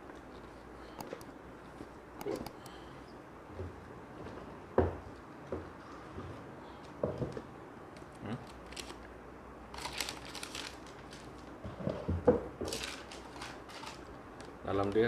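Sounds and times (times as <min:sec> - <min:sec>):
packaging rustling: 0:09.7 - 0:11.5, 0:12.7 - 0:15.0.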